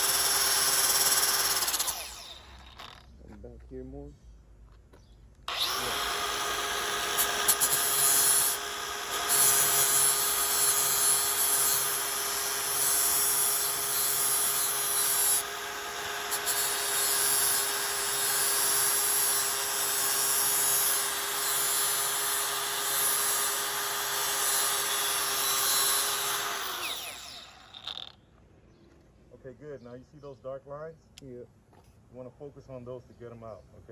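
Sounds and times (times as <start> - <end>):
angle grinder grinding metal: 0.0 - 3.1, 5.5 - 28.2.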